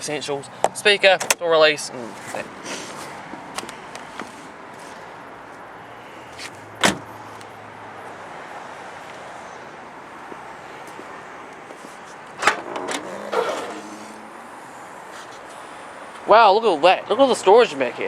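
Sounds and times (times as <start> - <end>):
door latch clicks: 6.8 - 7.1
car door thump: 6.8 - 7.2.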